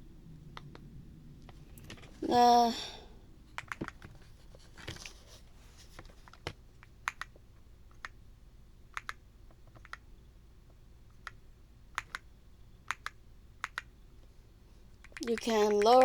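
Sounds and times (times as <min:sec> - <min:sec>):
mechanical keyboard key clicks: 0:03.6 - 0:04.1, 0:08.9 - 0:10.0.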